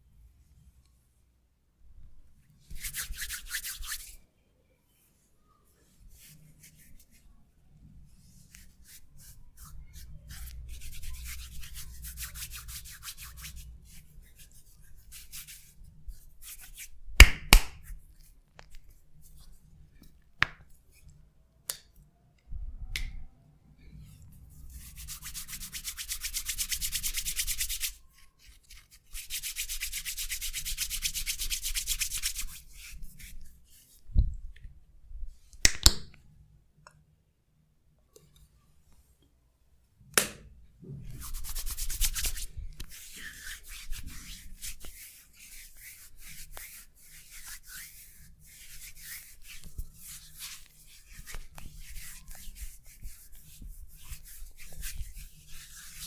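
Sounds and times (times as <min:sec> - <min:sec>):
hands rubbing skin: 0:02.7 - 0:04.2, 0:08.2 - 0:21.2, 0:24.2 - 0:34.1, 0:41.1 - 0:56.0.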